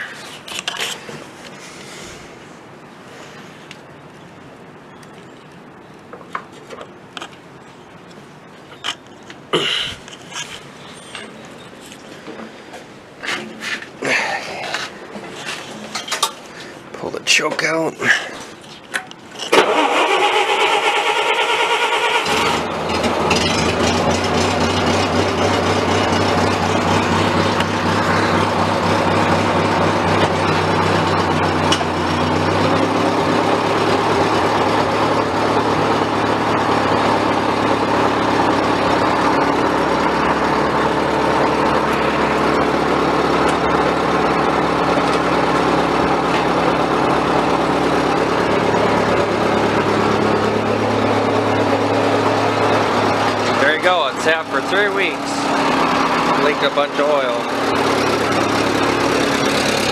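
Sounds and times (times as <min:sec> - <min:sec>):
gasoline engine running loudly: 0:19.6 - 0:59.9.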